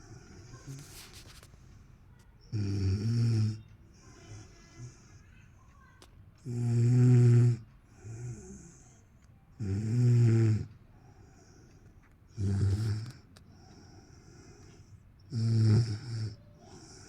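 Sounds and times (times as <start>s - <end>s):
quiet breaths: 0.0s - 17.0s
person snoring: 15.3s - 17.0s.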